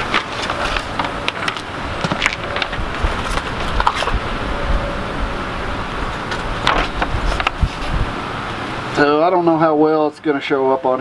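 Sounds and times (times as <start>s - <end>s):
handling clicks and rustles: 0.0s - 4.3s, 6.1s - 8.1s
wind rumble on microphone: 0.0s - 8.6s.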